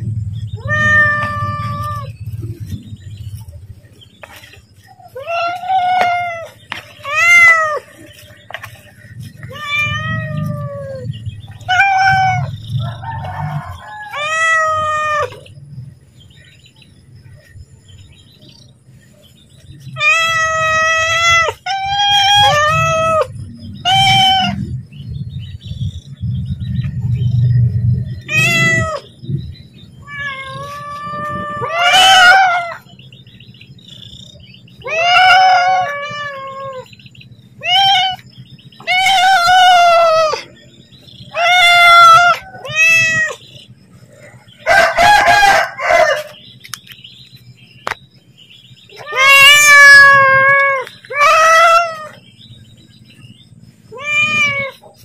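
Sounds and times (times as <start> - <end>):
cat meowing: 0.6 - 2.2, 5.0 - 7.9, 9.4 - 12.6, 14.1 - 15.5, 20.0 - 24.7, 28.2 - 29.1, 30.0 - 32.9, 34.8 - 36.9, 37.6 - 38.2, 38.8 - 40.5, 41.3 - 43.5, 48.9 - 52.2, 53.9 - 54.9.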